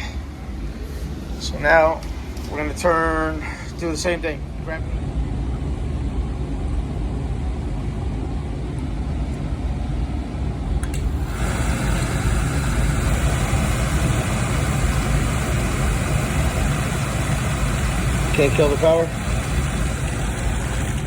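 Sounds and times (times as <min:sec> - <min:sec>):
boiler burner rumbling: 0:00.0 - 0:21.0
burner hissing: 0:10.3 - 0:21.0
burner click: 0:10.8 - 0:21.0.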